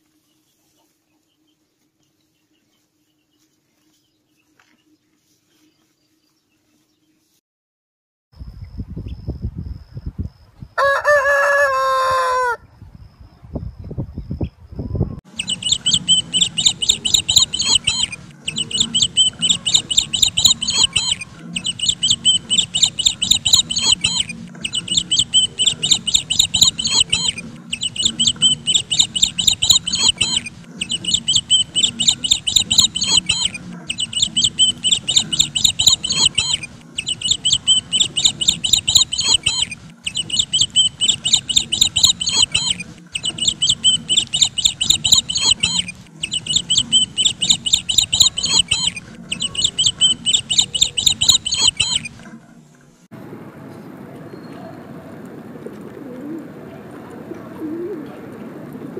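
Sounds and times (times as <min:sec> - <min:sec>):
bird chirping high notes: 0:15.3 - 0:52.2.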